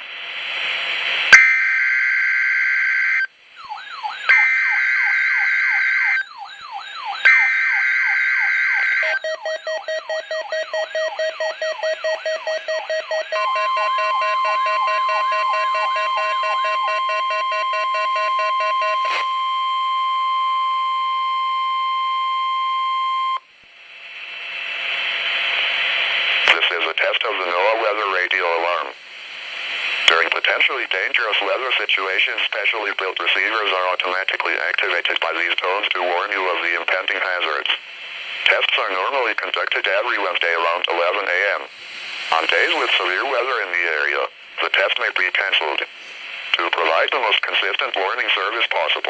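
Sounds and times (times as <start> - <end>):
steady warning alarm tone: 1.3 - 23.4
warbling siren alarm: 1.4 - 23.4
two-tone data bursts: 3.9 - 20.0.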